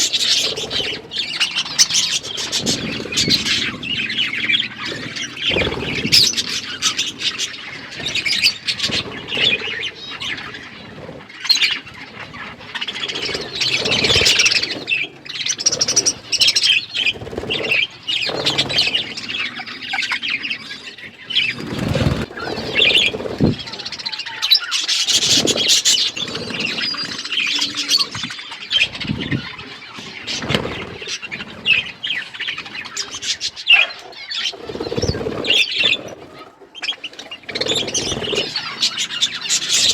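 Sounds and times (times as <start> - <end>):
budgerigars chattering and chirping: 0.0 - 39.9
wing flutters and thumps: 21.4 - 24.1, 28.0 - 31.9.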